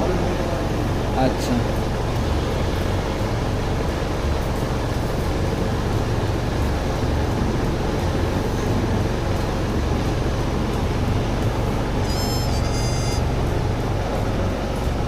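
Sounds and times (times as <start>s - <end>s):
low rumbling background noise: 0.0s - 15.0s
electronic beep: 12.0s - 13.2s.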